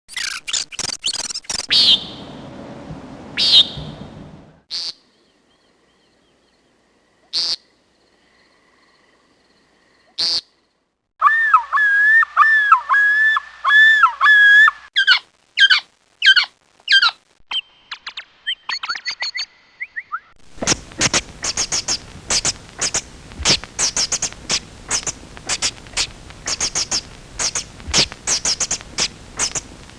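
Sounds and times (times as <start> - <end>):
songbird chirping: 1.1 - 2.5, 3.4 - 15.8, 21.0 - 29.6.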